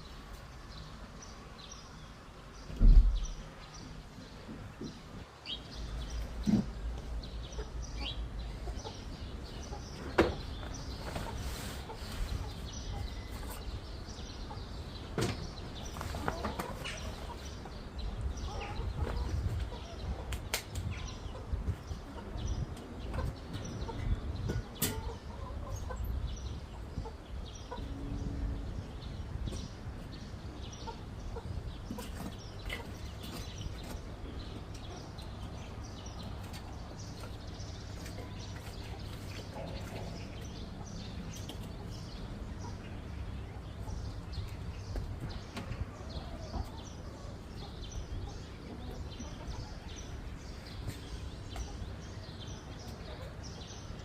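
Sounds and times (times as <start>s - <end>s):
chickens clucking: 3.7s - 54.0s.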